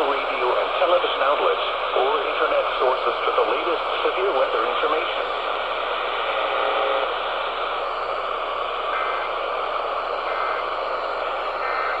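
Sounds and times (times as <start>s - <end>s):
radio static hiss: 0.0s - 12.0s.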